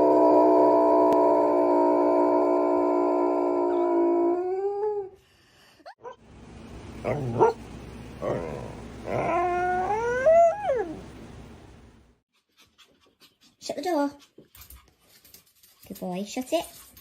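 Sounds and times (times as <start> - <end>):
dog howling and yipping: 7.0 - 7.6, 8.2 - 11.1.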